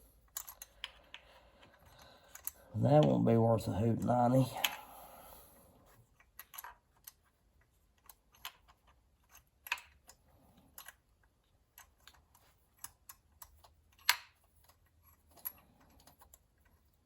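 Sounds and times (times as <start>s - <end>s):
metal tools clicking and tapping: 0.3s - 3.2s.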